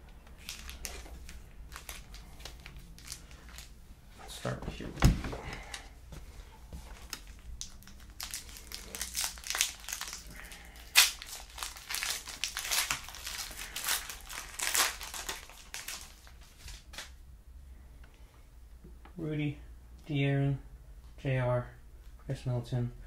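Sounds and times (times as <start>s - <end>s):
plastic wrapper crinkling: 0.4s - 3.8s, 6.9s - 17.1s.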